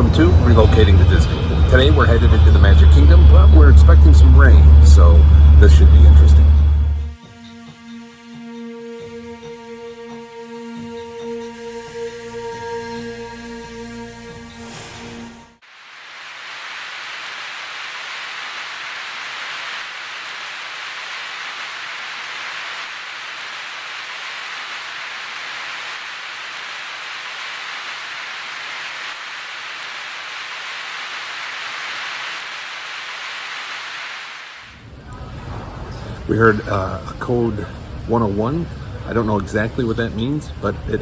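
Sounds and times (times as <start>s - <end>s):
rain falling: 0.0s - 7.2s, 15.6s - 41.0s.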